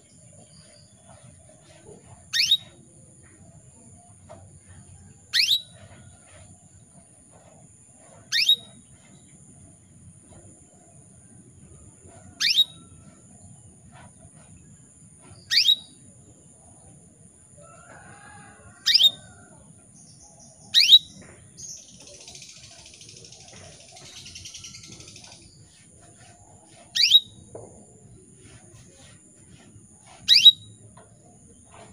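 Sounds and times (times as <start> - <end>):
canary chirps: 1.6 - 2.8, 5.3 - 6.3, 8.1 - 8.9, 12.3 - 12.9, 15.3 - 16.0, 18.8 - 19.2, 20.5 - 27.4, 28.8 - 30.8.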